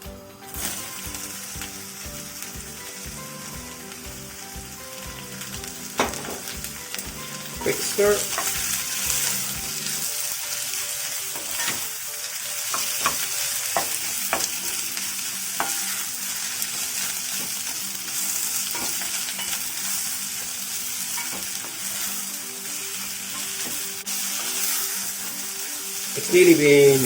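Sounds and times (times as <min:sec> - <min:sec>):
vegetables sizzling in hot oil: 0:00.0 - 0:27.0
utensil knocking pan: 0:05.9 - 0:09.9, 0:11.4 - 0:11.9, 0:12.7 - 0:14.9, 0:15.6 - 0:16.0, 0:18.7 - 0:19.8.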